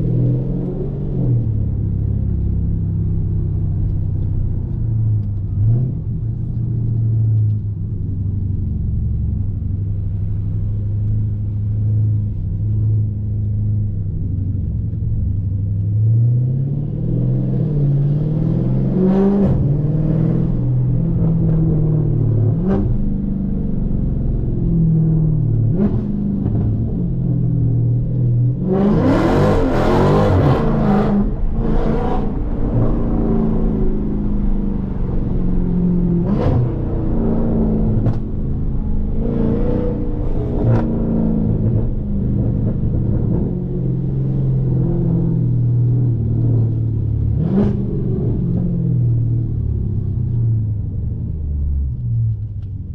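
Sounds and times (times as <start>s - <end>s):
car engine revving: 16.0s - 50.4s.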